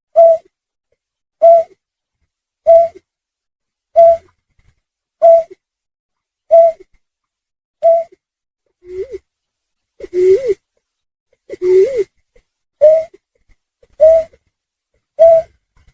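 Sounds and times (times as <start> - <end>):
low hooting bird call: 0.1 - 0.5, 1.4 - 1.8, 2.6 - 3.0, 4.0 - 4.3, 5.2 - 5.6, 6.5 - 6.8, 7.8 - 8.2, 11.5 - 12.1, 12.8 - 13.2, 14.0 - 14.4, 15.2 - 15.5.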